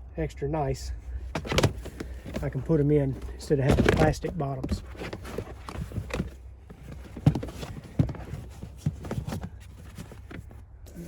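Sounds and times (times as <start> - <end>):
floor mats rustling: 1.1 - 11.0
dull knocks and thumps: 1.3 - 10.6.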